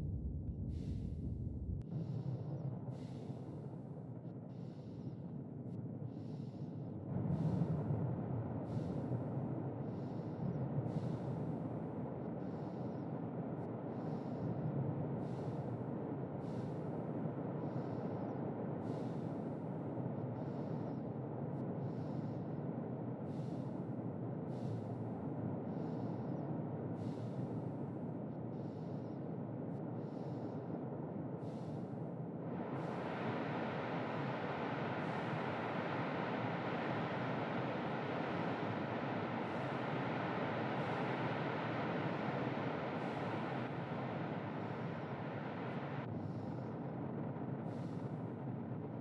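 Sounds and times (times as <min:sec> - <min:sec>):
low storm rumble: 0:00.0 - 0:01.8, 0:32.5 - 0:49.0.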